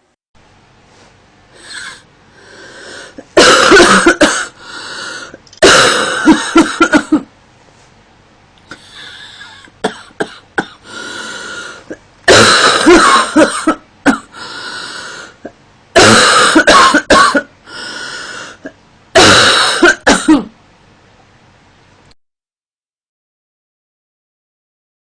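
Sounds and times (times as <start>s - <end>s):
woman drawing breath: 1.6s - 3.2s, 4.6s - 5.4s, 10.8s - 11.9s
woman coughing: 3.2s - 4.6s, 5.6s - 7.3s, 9.0s - 10.9s, 11.9s - 14.4s, 15.4s - 17.5s, 18.6s - 20.5s.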